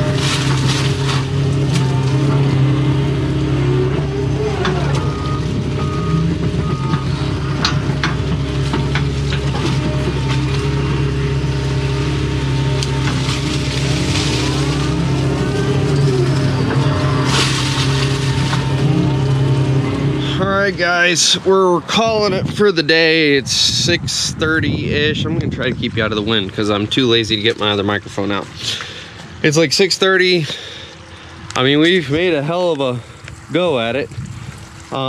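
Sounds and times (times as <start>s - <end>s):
hydraulic whine: 0.0s - 23.8s
excavator diesel engine running: 0.0s - 35.0s.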